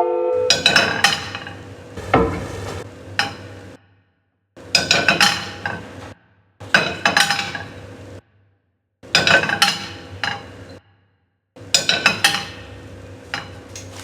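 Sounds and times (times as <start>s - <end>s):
clinking ringing strikes: 0.5s - 1.6s.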